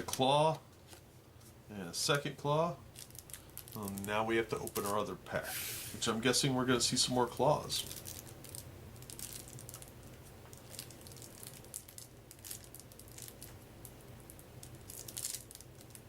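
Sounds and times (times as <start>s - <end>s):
plastic shrink-wrap crinkling: 2.9s - 5.2s, 6.9s - 16.0s.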